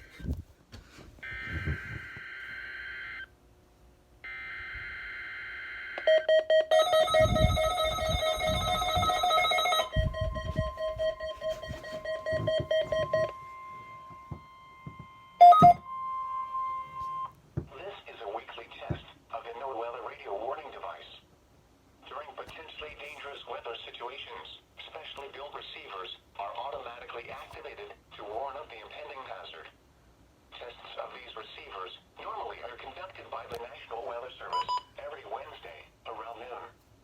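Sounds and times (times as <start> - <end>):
loud steady electronic tones: 6.8 - 17.3
single steady tone: 9.9 - 17.4.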